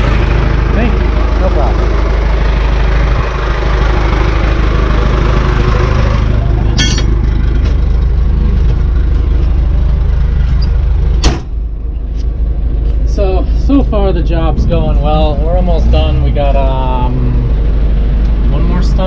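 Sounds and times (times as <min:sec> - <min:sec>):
old engine running steadily: 0:00.0 - 0:19.0
sharp metal clank: 0:06.8 - 0:07.2.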